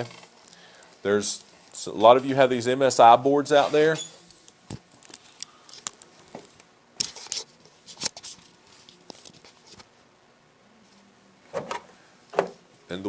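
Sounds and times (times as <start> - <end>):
light clicks and rustles of handling: 3.6 - 9.9.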